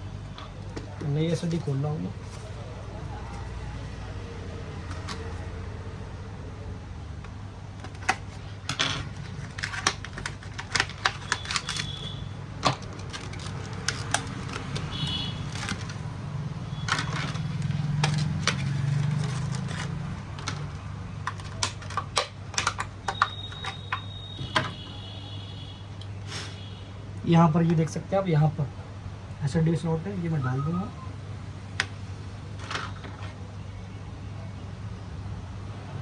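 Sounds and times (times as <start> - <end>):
plastic packaging clicks and crackles: 7.2 - 24.8.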